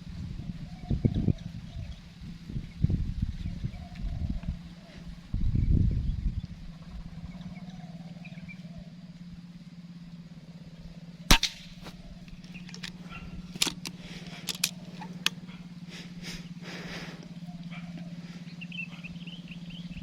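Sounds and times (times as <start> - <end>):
steady low hum: 0.0 - 20.0
air rifle shot: 11.3 - 12.0
small sharp clicks: 11.3 - 15.4.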